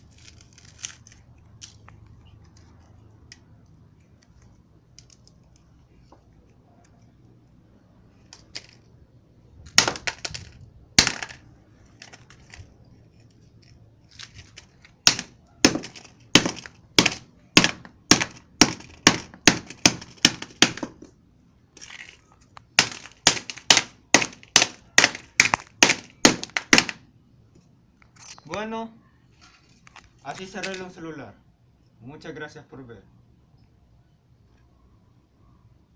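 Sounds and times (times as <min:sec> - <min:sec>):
mobile phone being smashed: 0:09.7 - 0:12.7, 0:13.6 - 0:21.1, 0:21.8 - 0:27.1.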